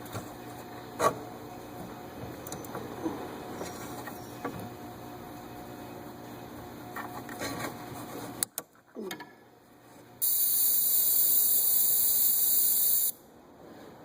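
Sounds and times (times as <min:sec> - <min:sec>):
high hiss of air spray: 0:10.2 - 0:13.2.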